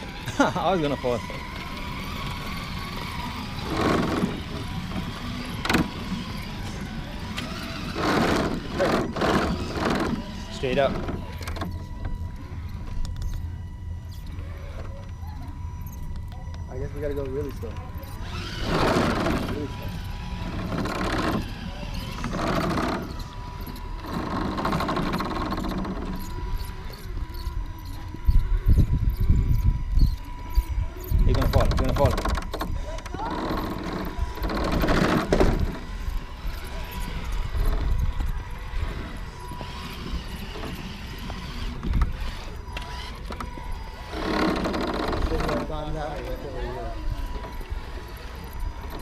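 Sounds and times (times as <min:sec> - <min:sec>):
low buffeting: 0:00.0 - 0:49.0
rc car motor whirring: 0:00.0 - 0:49.0
faint steady high tone: 0:10.2 - 0:18.6, 0:25.4 - 0:34.7.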